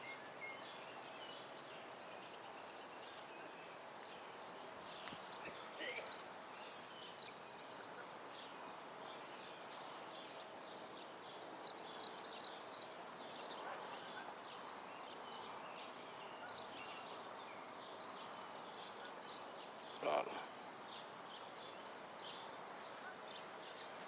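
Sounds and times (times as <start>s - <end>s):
birds chirping: 18.0s - 21.4s.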